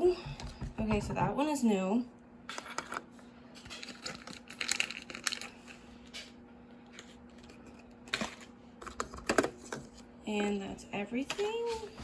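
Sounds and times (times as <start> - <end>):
plastic packaging crinkling: 3.6 - 5.8.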